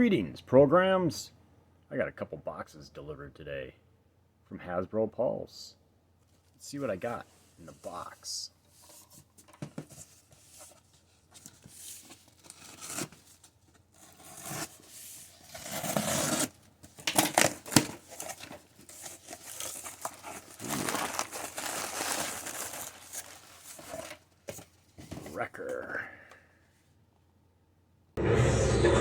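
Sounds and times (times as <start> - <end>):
cardboard box packing tearing: 11.8 - 13.4, 14.0 - 24.2.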